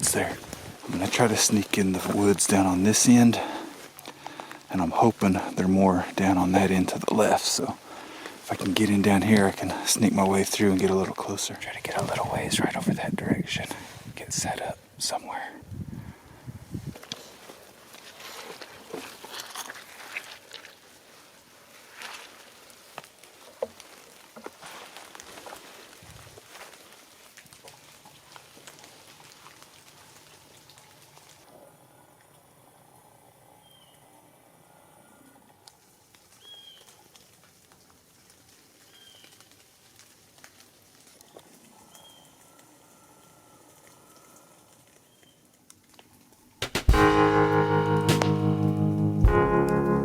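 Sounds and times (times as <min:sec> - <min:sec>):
faint ticks and patter: 0:00.0 - 0:34.2, 0:35.0 - 0:46.6
footsteps through wet leaves: 0:17.2 - 0:31.5, 0:36.3 - 0:45.8.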